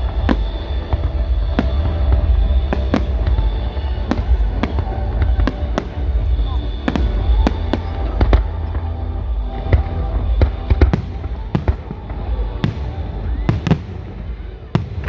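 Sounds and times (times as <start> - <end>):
fireworks bangs and cracks: 10.5 - 15.0.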